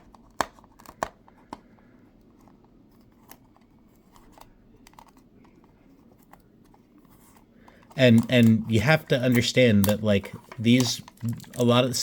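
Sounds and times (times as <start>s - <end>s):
card case and tape handling: 0.0s - 12.0s.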